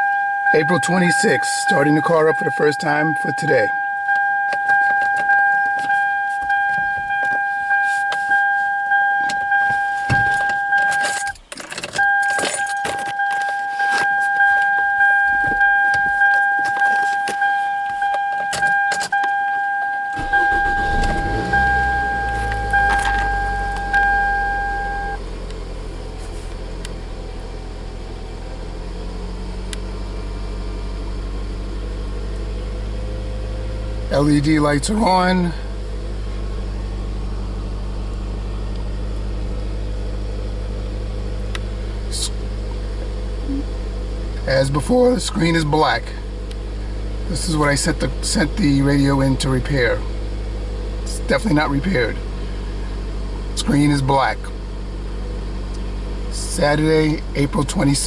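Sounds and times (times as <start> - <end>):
car warning chime dinging: 0.0 - 25.3
car engine starting and idling: 0.0 - 58.0
keys rattling and clicking: 10.4 - 14.6.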